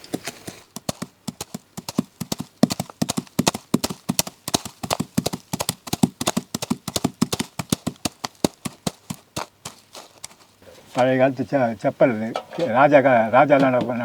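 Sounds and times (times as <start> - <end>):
galloping hoofbeats clip-clop: 0.0 - 10.6.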